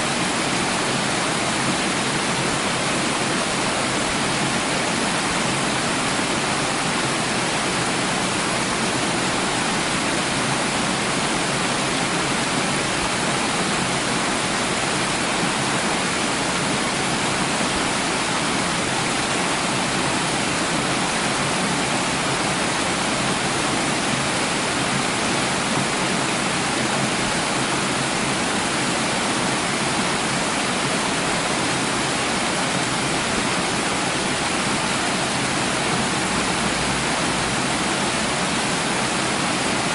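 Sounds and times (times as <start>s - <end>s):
running water: 0.0s - 39.9s.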